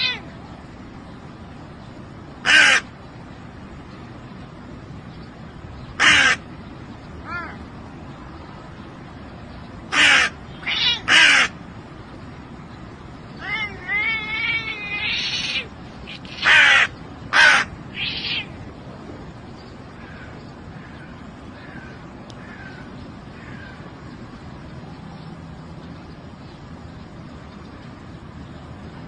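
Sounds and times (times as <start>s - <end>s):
crow cawing: 2.4s - 2.9s, 6.0s - 6.4s, 9.9s - 11.6s, 15.1s - 18.5s, 20.0s - 23.8s
warbled bird call: 2.4s - 2.9s, 6.0s - 6.5s, 9.9s - 11.6s, 13.3s - 18.6s.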